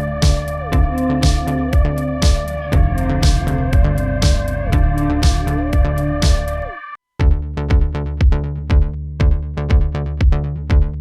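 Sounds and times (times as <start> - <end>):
sliding synth line: 0.0 - 7.0
sustained synth tones: 0.0 - 7.0
drum-machine beat: 0.0 - 11.0.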